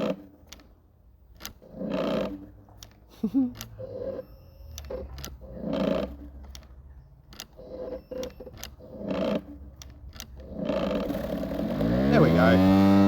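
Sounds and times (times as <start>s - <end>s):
electric lawnmower motor stuttering: 1.6s - 2.5s, 4.9s - 6.4s, 7.6s - 9.6s, 10.2s - 13.0s.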